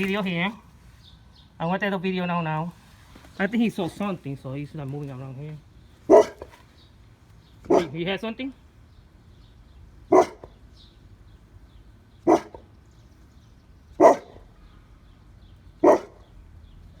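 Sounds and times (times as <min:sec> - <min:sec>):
dog barking: 0:06.1 - 0:06.6, 0:07.7 - 0:08.0, 0:10.1 - 0:10.6, 0:12.2 - 0:12.6, 0:14.0 - 0:14.5, 0:15.8 - 0:16.2.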